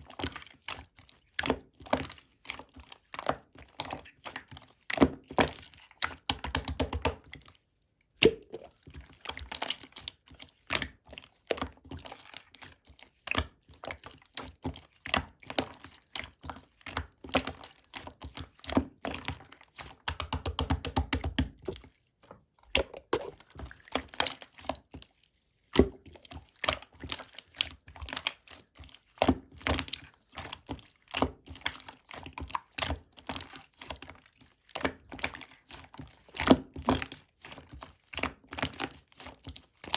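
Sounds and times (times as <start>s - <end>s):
slime squished by hand: 22.7s - 24.8s.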